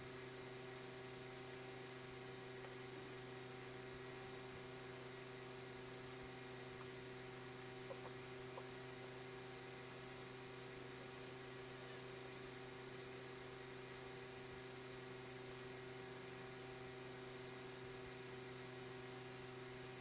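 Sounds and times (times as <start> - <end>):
low electrical hum: 0.0 - 20.0.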